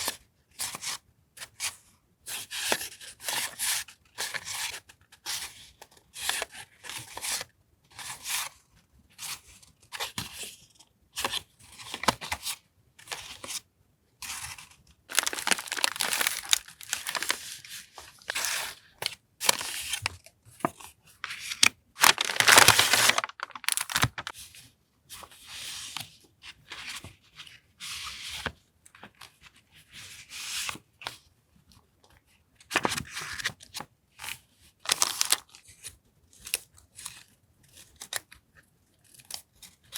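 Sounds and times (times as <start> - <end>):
paper tearing: 15.1 - 17.6, 21.3 - 24.3
paper rustling and crinkling: 15.1 - 24.5, 34.9 - 35.5.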